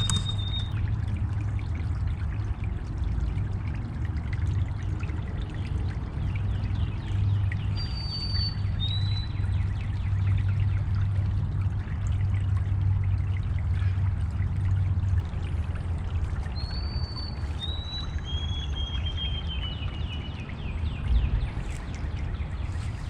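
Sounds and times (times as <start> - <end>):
birds whistling: 0.0 - 0.8.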